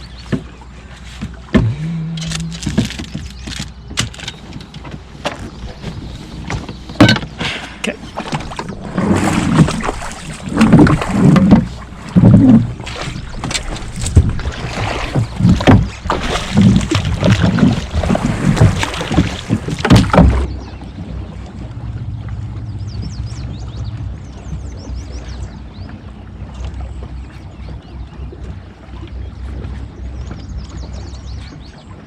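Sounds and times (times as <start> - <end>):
oars knocking on boat: 0.0 - 20.7
low steady hum: 0.0 - 31.8.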